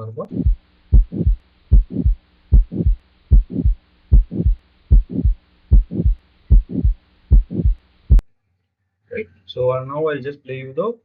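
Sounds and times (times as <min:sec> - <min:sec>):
faint steady hum: 0:00.0 - 0:11.0
heartbeat: 0:00.2 - 0:08.2
swishing heart murmur: 0:00.3 - 0:07.8.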